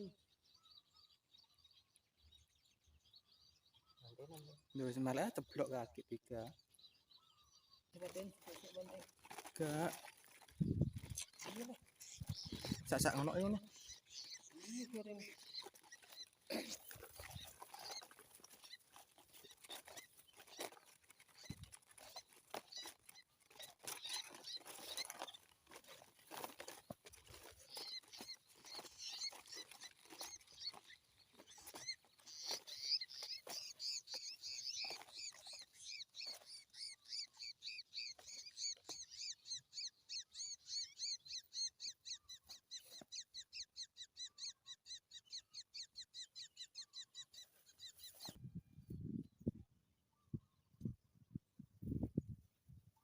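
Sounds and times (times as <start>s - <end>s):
small bird chirping: 0.0s - 53.0s
clicks and rustling: 14.4s - 35.6s.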